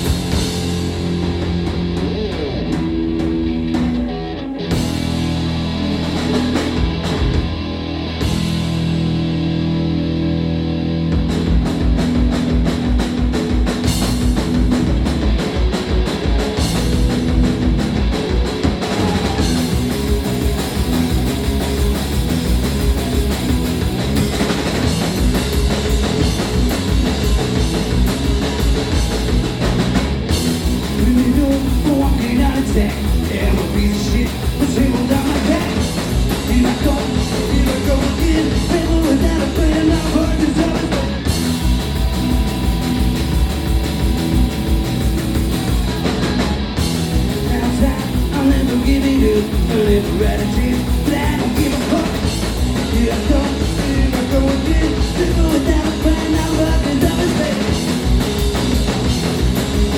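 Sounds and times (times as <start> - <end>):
punk rock band playing live: 0.0 - 59.9
person singing: 31.0 - 35.8, 36.4 - 41.2, 47.4 - 57.9.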